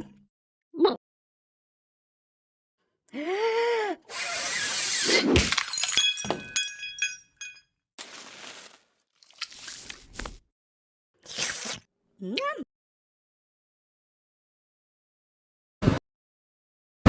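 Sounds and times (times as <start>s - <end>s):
glass breaking: 5.4s - 7.6s
glass clinking: 5.5s - 7.7s.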